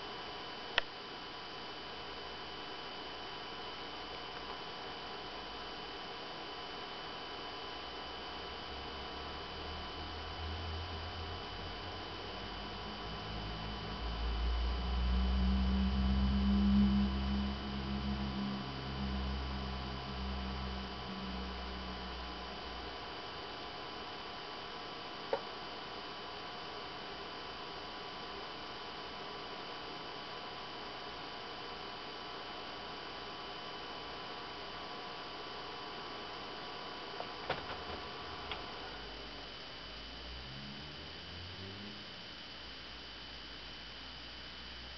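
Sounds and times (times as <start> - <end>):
faint steady whine and hiss: 0.0 - 44.9
projector cooling fan hum: 0.0 - 44.9.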